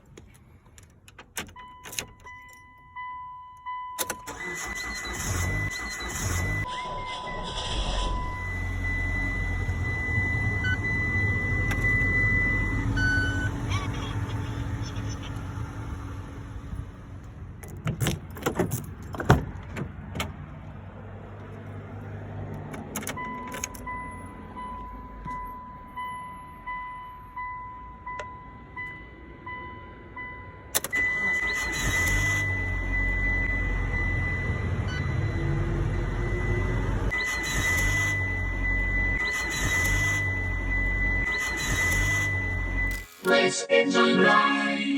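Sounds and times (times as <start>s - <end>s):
car engine running: 4.9s - 19.8s
pulsing electronic chime: 5.0s - 11.3s
steady high tone: 5.8s - 11.6s, 42.6s - 44.9s.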